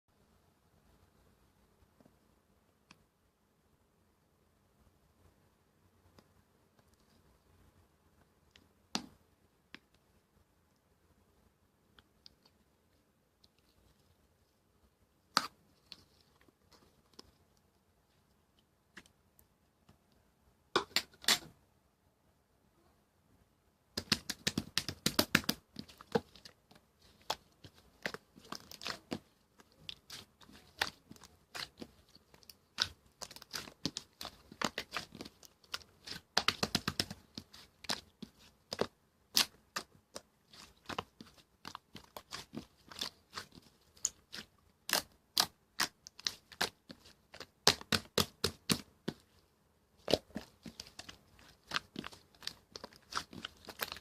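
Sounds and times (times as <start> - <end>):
slime clicking and popping: 24.0 - 26.5, 29.9 - 49.2.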